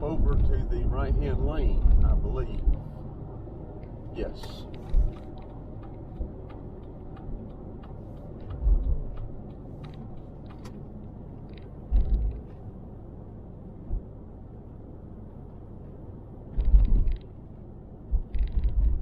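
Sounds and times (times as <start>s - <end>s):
car road noise rumble: 0.0s - 19.0s
light ticks: 3.8s - 12.6s.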